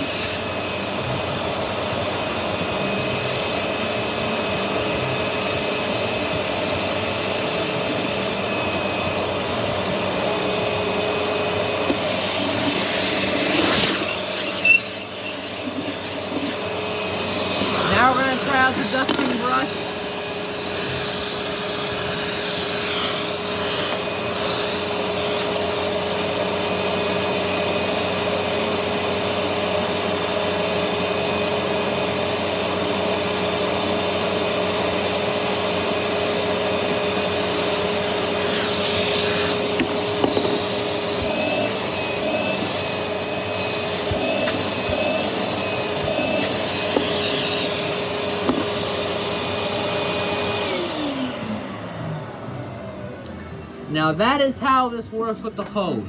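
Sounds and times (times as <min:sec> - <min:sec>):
suction through hose: 0:00.0 - 0:26.8, 0:36.7 - 0:51.4
vacuum cleaner motor whine: 0:00.0 - 0:54.2.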